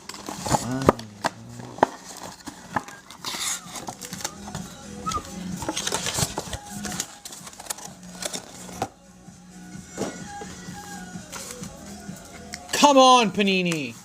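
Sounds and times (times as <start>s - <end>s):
wrapper tearing and crinkling: 5.6s - 8.8s.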